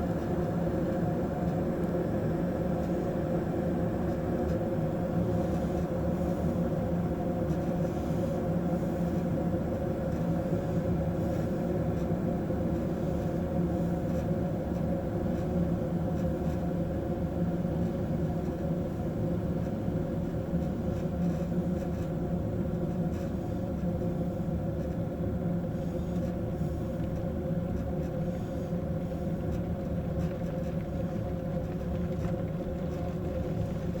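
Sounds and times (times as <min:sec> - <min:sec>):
electric kettle boiling water: 0:28.7 - 0:34.0.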